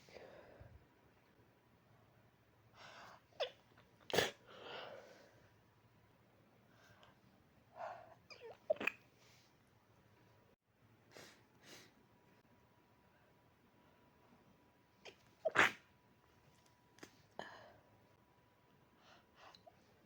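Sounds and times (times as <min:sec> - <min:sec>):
person stifling sneezes: 0:03.4 - 0:04.4, 0:15.4 - 0:15.8.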